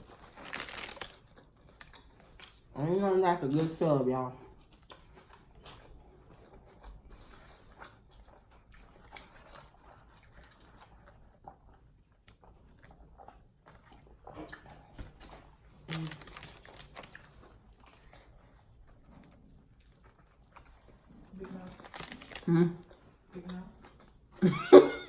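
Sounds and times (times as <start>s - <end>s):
chewing and biting sandwich: 0.0s - 2.8s, 4.5s - 24.4s.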